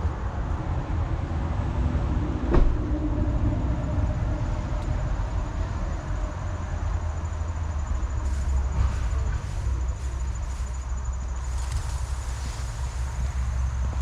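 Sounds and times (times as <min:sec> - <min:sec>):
spray hissing: 0:11.4 - 0:13.9.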